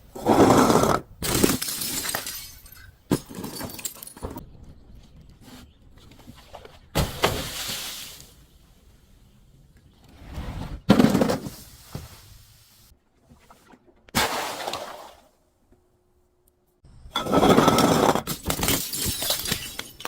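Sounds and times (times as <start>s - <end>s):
glass bottles shattering: 1.2s - 4.4s, 17.4s - 20.0s
crunching glass debris: 1.3s - 4.3s, 18.2s - 20.0s.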